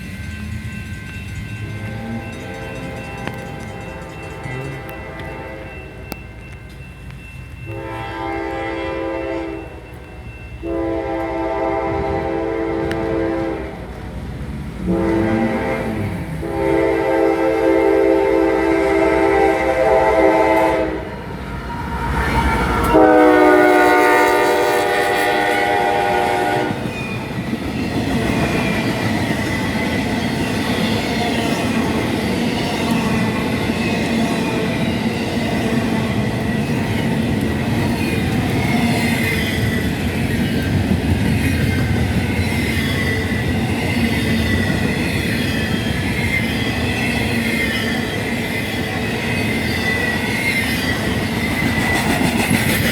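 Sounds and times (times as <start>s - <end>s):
train rumbling and clacking: 0.0s - 52.9s
locomotive air horn blasts: 1.8s - 6.2s, 7.7s - 13.9s, 14.8s - 26.9s.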